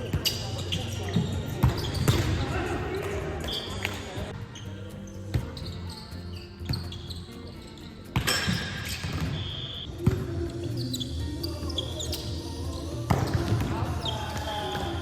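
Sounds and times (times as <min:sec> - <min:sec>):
shoes squeaking on floor: 0:00.0 - 0:02.5, 0:03.2 - 0:15.0
volleyball impacts: 0:01.2 - 0:04.2, 0:08.1 - 0:10.4.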